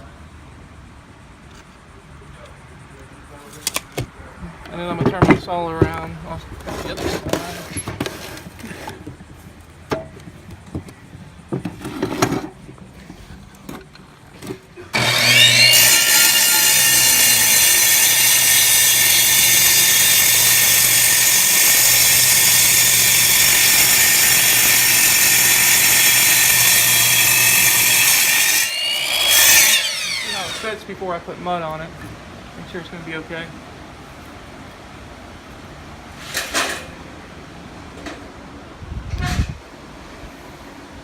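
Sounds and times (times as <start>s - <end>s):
masonry saw cutting stone: 14.9s - 30.9s.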